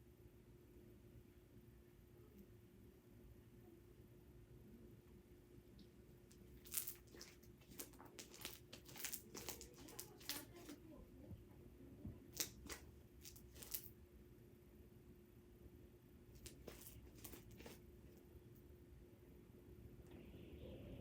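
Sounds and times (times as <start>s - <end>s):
slime crackling and clicking: 6.6s - 10.8s, 12.4s - 13.9s.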